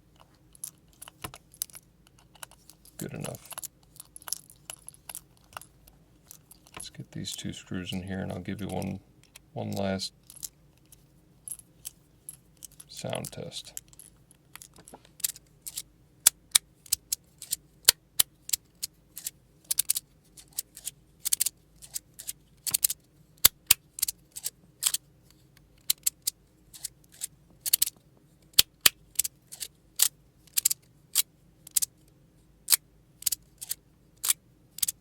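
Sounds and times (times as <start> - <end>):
magnetic fidget slider clicking: 15.2 - 25.0, 25.8 - 27.9, 28.6 - 31.9, 32.7 - 35.0.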